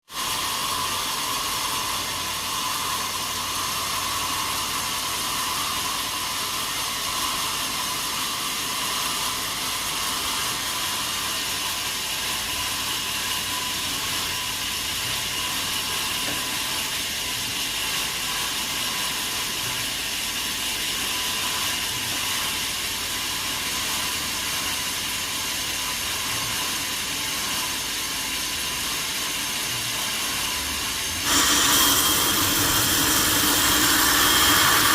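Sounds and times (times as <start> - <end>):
sawmill machinery hissing: 0.0 - 34.9
high whining tones: 31.2 - 34.9.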